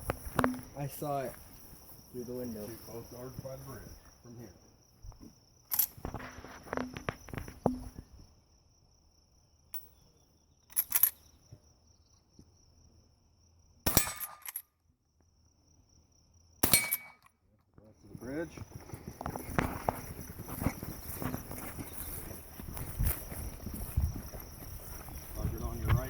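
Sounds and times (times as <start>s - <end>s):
rifle lever rattling clicks: 5.7s - 6.0s, 10.7s - 11.3s, 14.1s - 14.6s
rifle shots: 13.9s - 14.5s, 16.6s - 17.2s
steel target ringing clang: 16.6s - 17.2s
high insect buzz: 18.1s - 26.0s.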